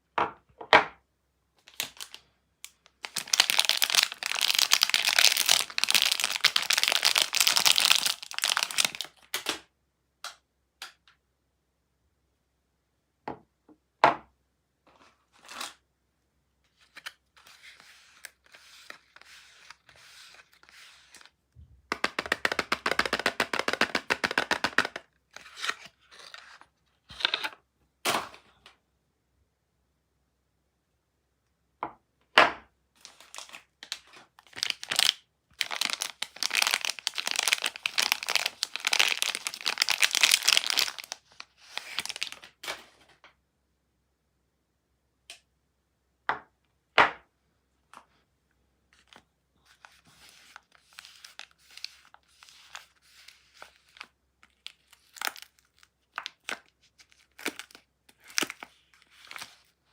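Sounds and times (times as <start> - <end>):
packaging tearing and crinkling: 1.7 - 2.2, 3.0 - 9.5, 33.0 - 42.7, 50.2 - 59.7.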